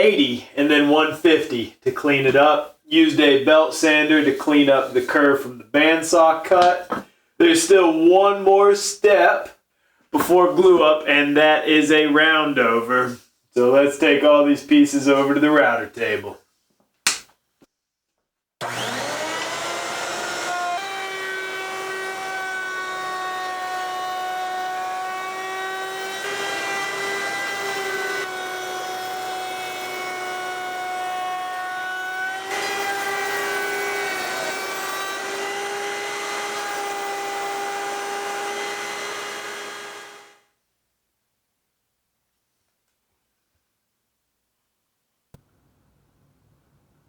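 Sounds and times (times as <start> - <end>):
wood router high whine: 18.6 - 40.4.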